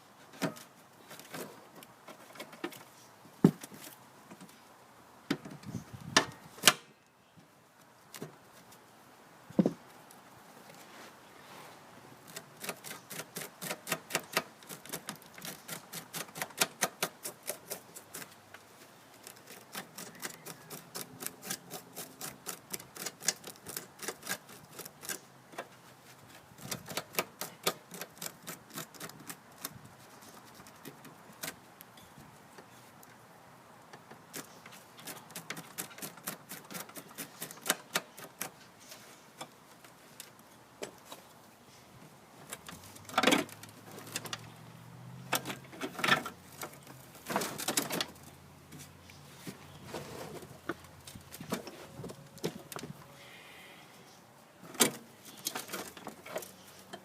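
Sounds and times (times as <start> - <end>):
rapid clicking of hand tool: 12.3 - 18.4, 19.2 - 25.3, 26.6 - 29.8, 34.2 - 38.6.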